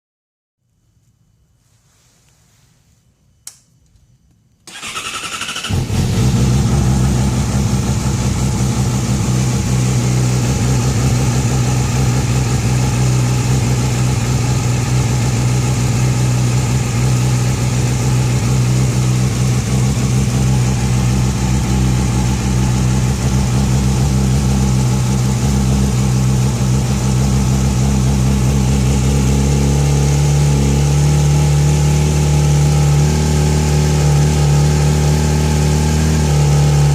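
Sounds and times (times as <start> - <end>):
click: 3.4 - 4.6
motorcycle engine starting and idling: 4.6 - 36.9.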